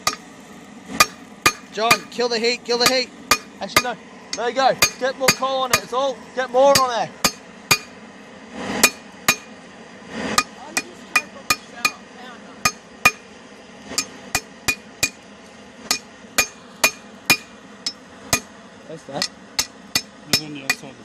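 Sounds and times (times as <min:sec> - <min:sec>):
hammer striking metal anvil: 0:00.0 - 0:00.2, 0:01.0 - 0:02.2, 0:02.8 - 0:06.0, 0:06.7 - 0:08.0, 0:08.8 - 0:09.5, 0:10.4 - 0:12.0, 0:12.6 - 0:13.2, 0:13.9 - 0:15.2, 0:15.9 - 0:18.5, 0:19.2 - 0:20.9.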